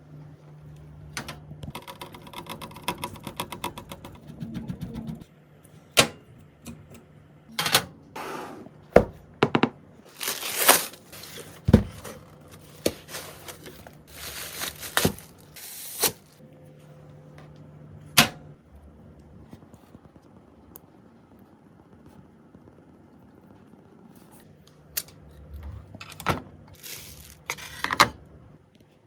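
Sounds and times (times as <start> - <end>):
clicks and knocks of pc parts: 5.9 - 7.0.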